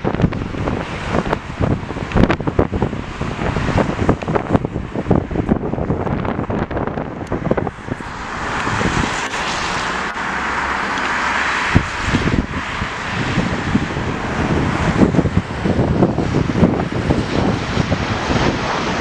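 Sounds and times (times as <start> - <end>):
jet airliner passing overhead: 0.0 - 19.0
wind buffeting microphone: 0.0 - 19.0.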